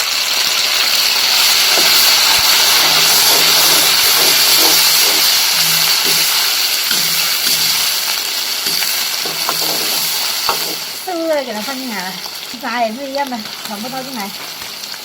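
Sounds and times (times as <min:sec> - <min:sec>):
food sizzling in hot fat: 0:00.0 - 0:15.0.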